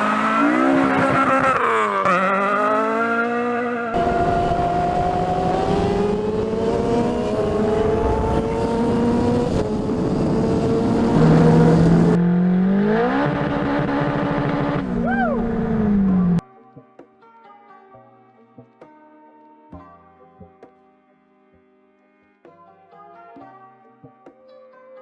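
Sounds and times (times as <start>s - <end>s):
car engine revving: 0.0s - 16.4s.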